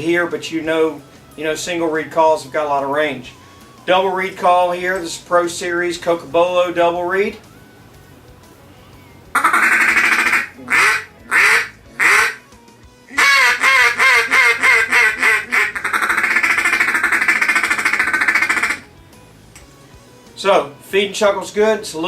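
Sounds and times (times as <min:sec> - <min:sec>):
duck call quacking: 0:09.4 - 0:12.4, 0:13.1 - 0:18.9.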